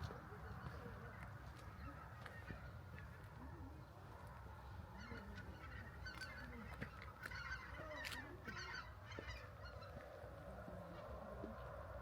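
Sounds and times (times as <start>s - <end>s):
flock of ducks calling: 0.4s - 3.7s, 4.5s - 10.2s.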